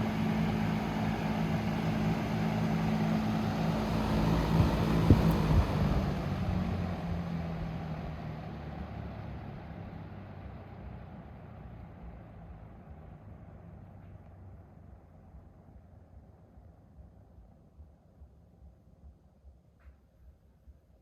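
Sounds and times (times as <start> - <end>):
fan motor hum and air rush: 0.0 - 9.5.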